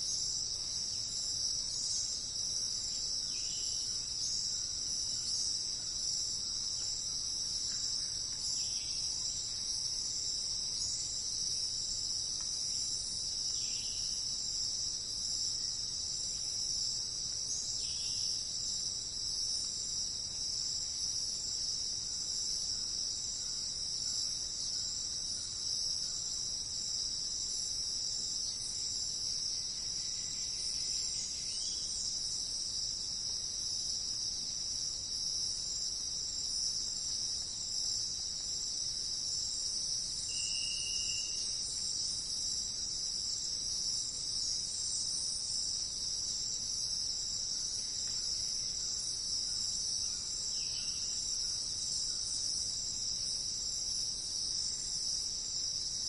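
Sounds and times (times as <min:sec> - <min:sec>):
crickets chirping chorus: 0:00.0 - 0:56.0.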